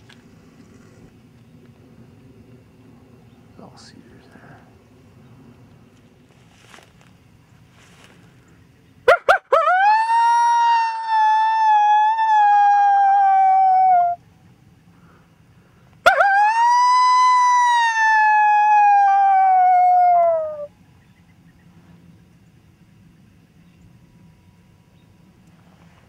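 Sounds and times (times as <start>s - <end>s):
rising yips: 9.1s - 14.2s, 16.1s - 20.7s
coyote howls from predator call: 9.1s - 14.3s, 16.0s - 20.7s.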